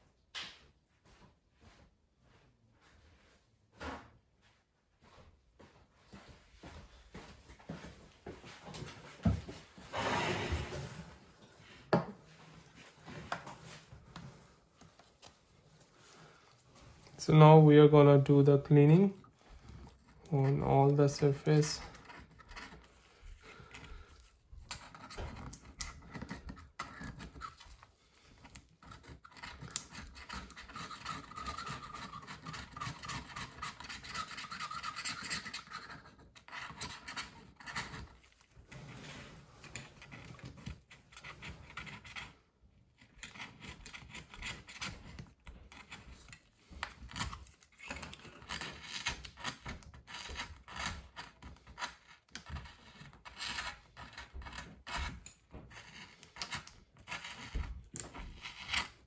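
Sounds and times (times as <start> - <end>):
scratching and rubbing inside laptop case: 8.5 - 11.4, 19.2 - 59.0.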